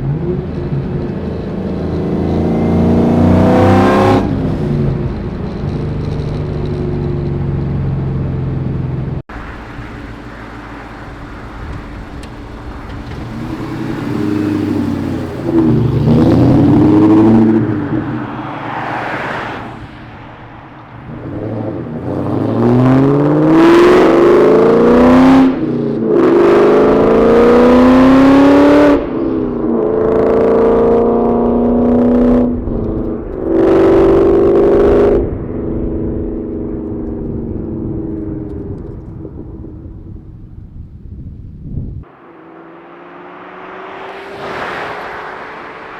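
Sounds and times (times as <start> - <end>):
car engine revving through gears: 0.0 - 7.2, 9.3 - 20.0, 21.0 - 29.1, 42.0 - 45.9.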